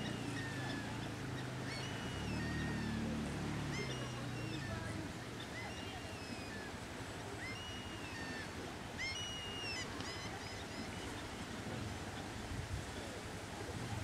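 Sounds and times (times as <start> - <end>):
birds calling: 0.0 - 6.6.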